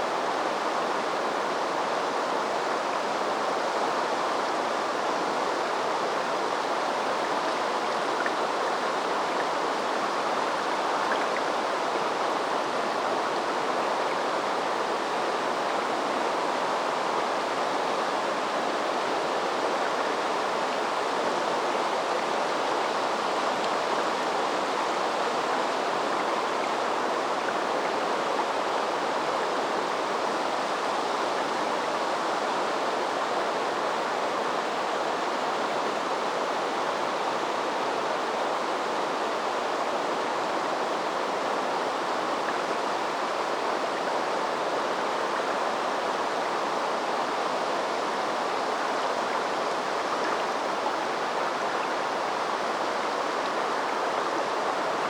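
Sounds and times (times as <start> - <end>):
river water flowing: 0.0 - 55.0.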